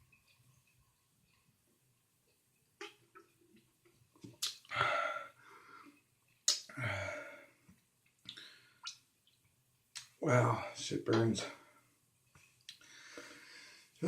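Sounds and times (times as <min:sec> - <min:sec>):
soft breaths: 0:04.7 - 0:06.1, 0:10.5 - 0:14.0.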